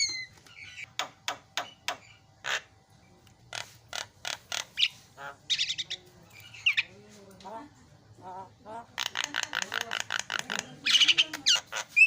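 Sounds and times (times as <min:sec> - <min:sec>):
myna chattering: 0:03.5 - 0:12.0.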